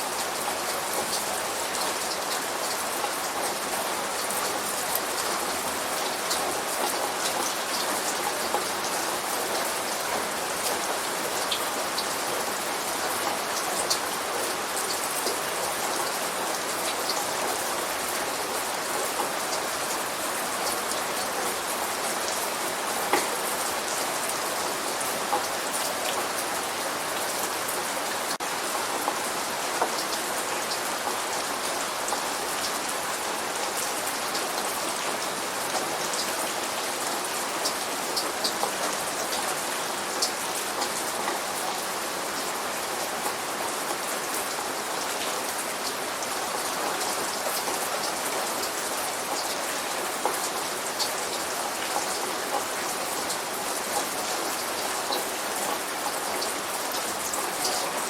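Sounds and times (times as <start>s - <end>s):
light rain falling: 0.0s - 58.0s.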